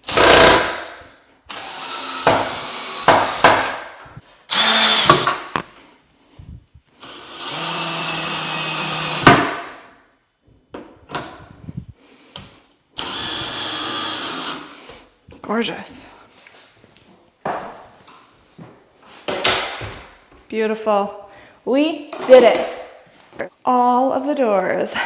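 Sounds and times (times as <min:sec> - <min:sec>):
power drill running: 0:00.0 - 0:00.8, 0:01.5 - 0:03.7, 0:04.5 - 0:05.6, 0:07.0 - 0:09.4, 0:13.0 - 0:14.7.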